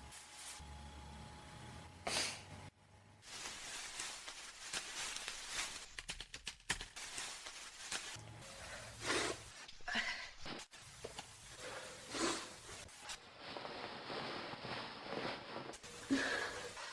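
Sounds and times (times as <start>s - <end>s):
person sneezing: 2.1s - 2.5s.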